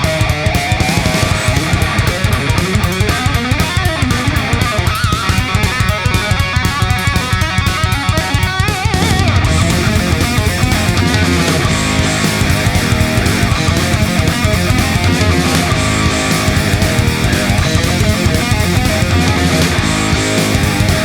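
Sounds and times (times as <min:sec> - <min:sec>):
electric guitar: 0:00.0 - 0:21.0
fast drum beat: 0:00.0 - 0:21.0
rock music: 0:00.0 - 0:21.0.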